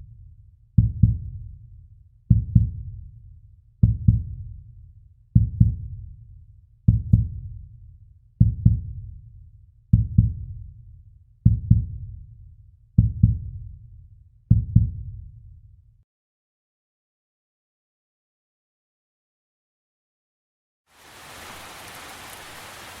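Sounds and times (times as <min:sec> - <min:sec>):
heartbeat thumps: 0:00.8 - 0:01.5, 0:02.3 - 0:03.0, 0:03.8 - 0:04.6, 0:05.4 - 0:06.1, 0:06.9 - 0:07.6, 0:08.4 - 0:09.1, 0:09.9 - 0:10.6, 0:11.4 - 0:12.2, 0:13.0 - 0:13.7, 0:14.5 - 0:15.2.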